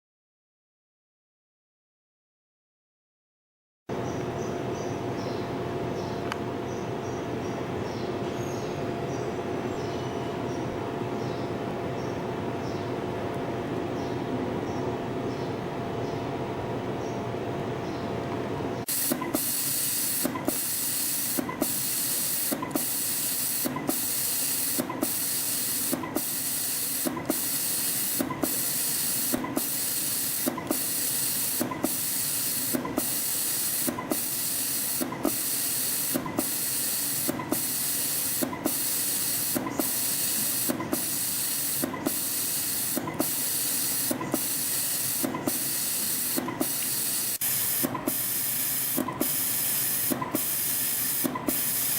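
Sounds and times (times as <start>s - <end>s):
machine clicks: 18.9s - 51.9s
machine hissing: 18.9s - 51.9s.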